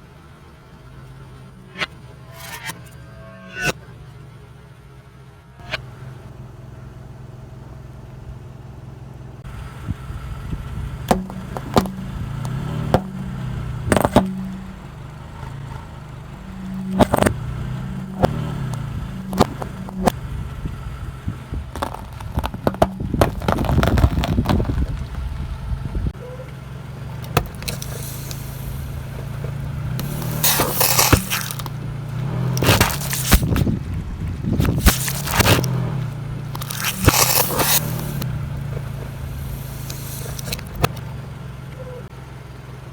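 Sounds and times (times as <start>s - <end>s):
car engine running at low speed: 0.0s - 42.9s
objects cracking under tyre: 11.0s - 15.8s, 16.4s - 26.2s, 27.0s - 41.8s
crackling and crunching: 21.4s - 26.1s, 27.1s - 33.8s, 34.6s - 41.2s.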